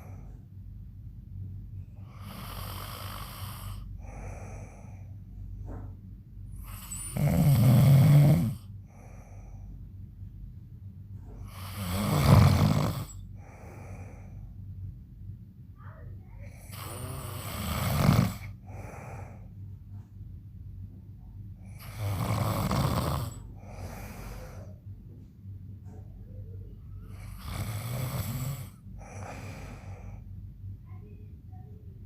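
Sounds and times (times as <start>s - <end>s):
soft breath sound: 0.0s - 0.8s, 1.8s - 10.4s, 11.0s - 14.9s, 15.8s - 20.2s, 21.6s - 32.0s
man snoring loudly: 2.0s - 4.4s, 6.6s - 8.6s, 11.5s - 13.2s, 16.7s - 18.9s, 21.7s - 24.2s, 27.2s - 29.8s.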